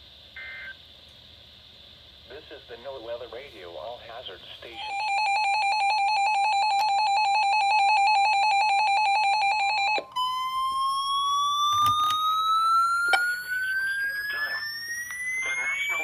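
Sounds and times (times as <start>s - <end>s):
pulsing buzzer-like tone: 4.8s - 16.0s
tone gliding upward in pitch: 10.1s - 16.0s.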